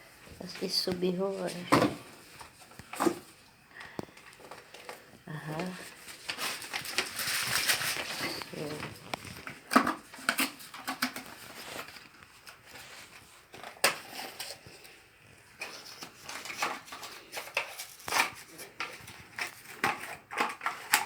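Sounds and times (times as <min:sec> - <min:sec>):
packaging rustling: 0:00.2 - 0:21.0
plastic parts clicking and knocking: 0:08.8 - 0:11.5, 0:15.6 - 0:21.0.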